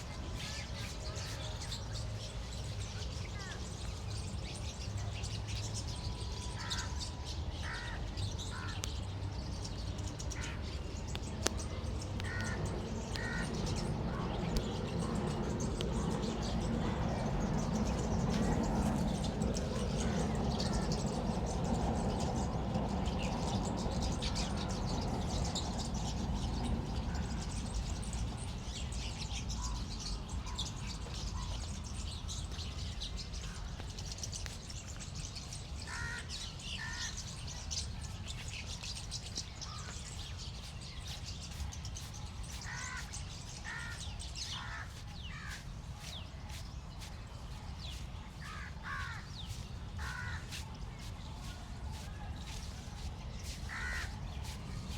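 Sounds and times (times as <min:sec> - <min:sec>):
crows cawing: 0:06.6 - 0:06.9, 0:07.6 - 0:08.8, 0:12.2 - 0:14.3, 0:20.0 - 0:21.0, 0:35.9 - 0:37.2, 0:42.6 - 0:45.6, 0:48.5 - 0:49.3, 0:50.0 - 0:50.5, 0:53.7 - 0:54.2.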